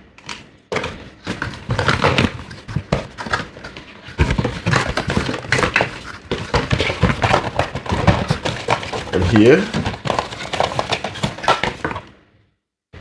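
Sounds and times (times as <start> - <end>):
packaging rustling and tapping: 0.2 - 12.2.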